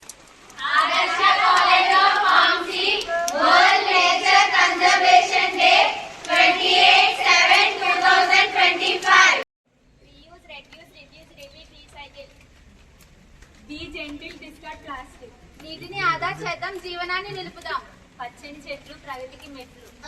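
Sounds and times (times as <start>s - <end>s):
voices singing: 0.6s - 9.4s, 15.2s - 17.8s.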